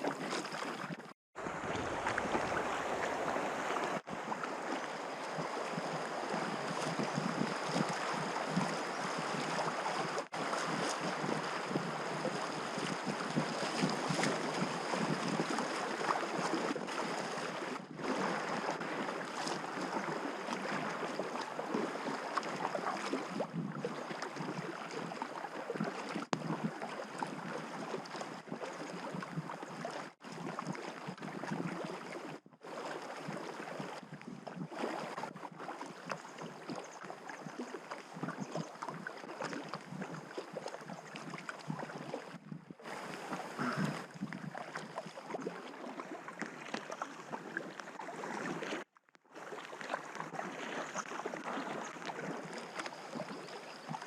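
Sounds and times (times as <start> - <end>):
river water rushing and splashing: 0.0 - 23.3, 34.7 - 54.0.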